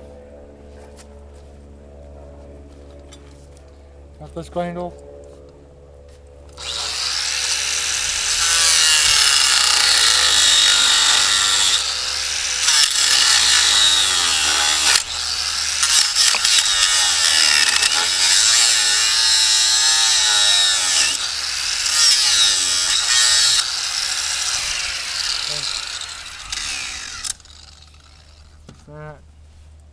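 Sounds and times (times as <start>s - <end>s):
angle grinder grinding metal: 6.6s - 28.6s.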